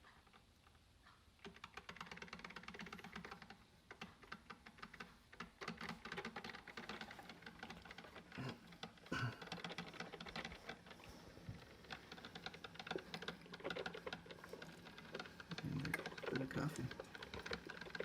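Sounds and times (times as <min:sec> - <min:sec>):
coffee maker crackling and popping: 0:04.0 - 0:18.0.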